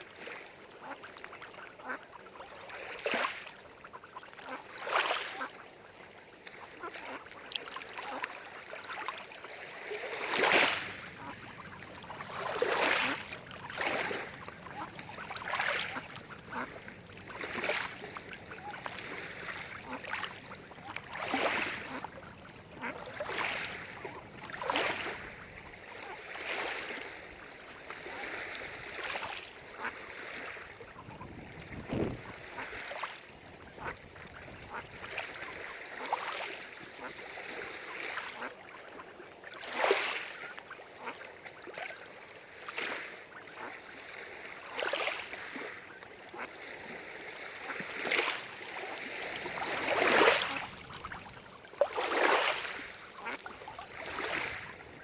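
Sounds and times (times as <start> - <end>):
small waves lapping on shore: 0.0 - 55.0.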